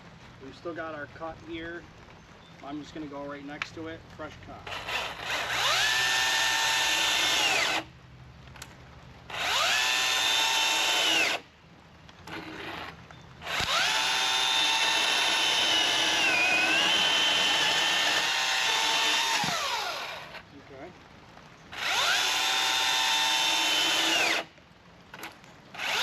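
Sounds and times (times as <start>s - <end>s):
electric chainsaw motor whining: 4.6s - 7.9s, 9.3s - 11.4s, 12.3s - 20.4s, 21.7s - 24.5s, 25.2s - 26.0s
man speaking: 20.5s - 21.0s.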